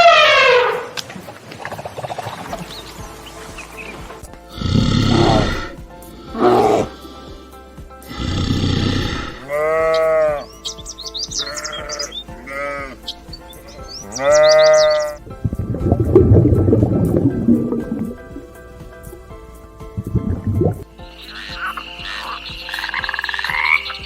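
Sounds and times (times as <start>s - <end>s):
sheep or goats bleating: 8.2s - 10.5s, 11.2s - 15.2s.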